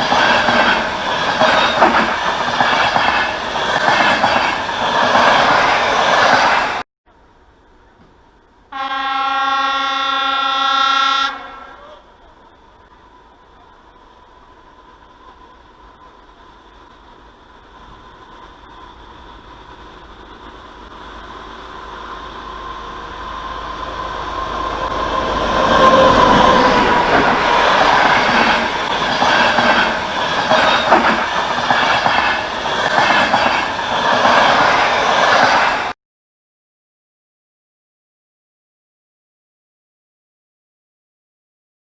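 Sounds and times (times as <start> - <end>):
wheels clickety-clack: 0.0 - 6.6, 26.0 - 35.9
train passing: 0.0 - 36.0
faint whine from rails: 7.1 - 35.9.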